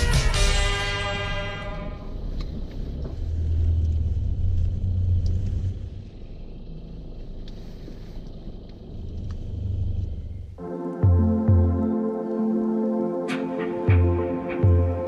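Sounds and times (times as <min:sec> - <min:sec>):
low rumble: 0:00.0 - 0:12.0.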